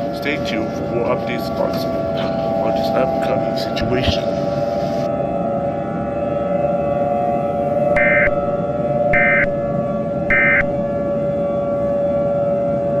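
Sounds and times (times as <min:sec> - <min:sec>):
steady two-note drone: 0:00.0 - 0:12.9
short buzzing data bursts: 0:09.2 - 0:09.5, 0:10.3 - 0:10.7.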